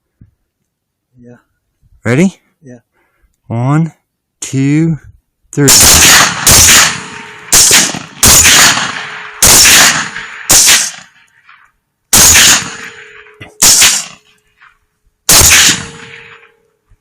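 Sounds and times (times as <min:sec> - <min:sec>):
rifle shots echoing: 0:05.6 - 0:16.6.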